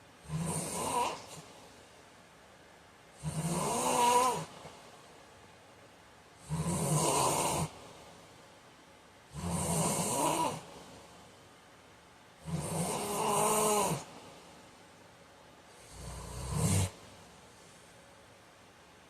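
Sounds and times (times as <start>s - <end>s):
man snoring: 0.2s - 1.4s, 3.2s - 4.6s, 6.4s - 7.8s, 9.3s - 10.7s, 12.4s - 14.1s, 15.8s - 17.0s.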